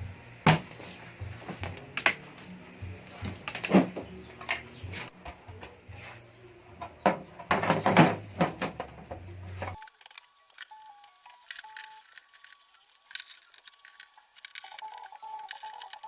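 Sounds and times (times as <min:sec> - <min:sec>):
plastic cover knocking and rattling: 0:07.0 - 0:09.2.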